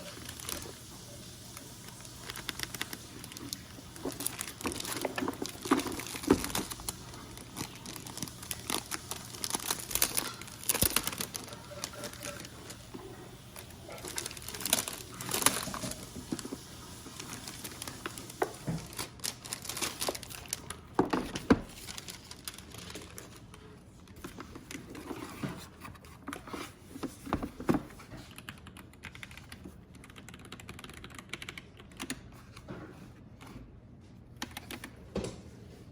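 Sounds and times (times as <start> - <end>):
packaging crinkling and rustling: 0.0 - 28.4.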